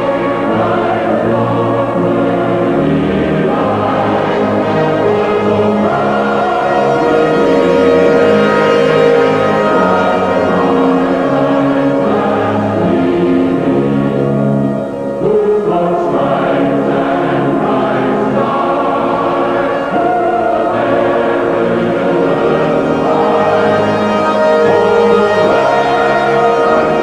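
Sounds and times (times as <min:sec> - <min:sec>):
choir singing held chords: 0:00.0 - 0:27.0.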